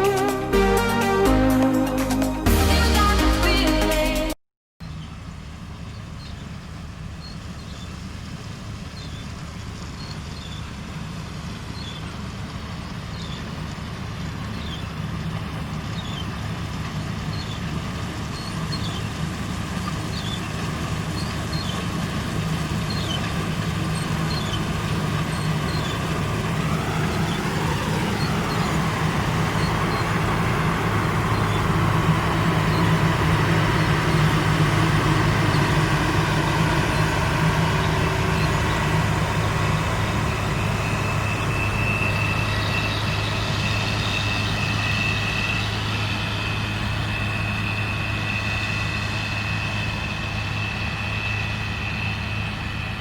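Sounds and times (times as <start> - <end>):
combine harvester running: 0.0 - 3.4, 4.8 - 53.0
whine rising and falling: 0.0 - 3.6, 23.2 - 53.0.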